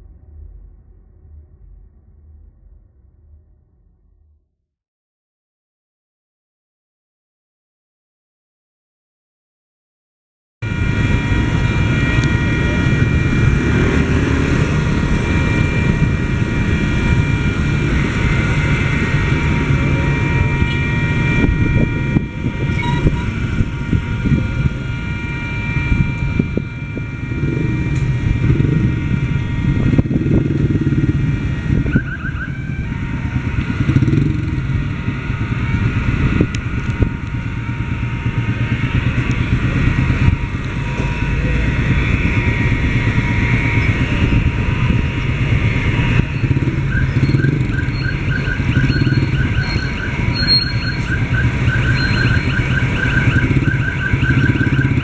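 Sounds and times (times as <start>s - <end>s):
level crossing warning siren: 10.6s - 55.0s
motorcycles and traffic idling: 10.7s - 55.0s
rapid pulsing beep: 22.5s - 24.3s, 46.1s - 55.0s.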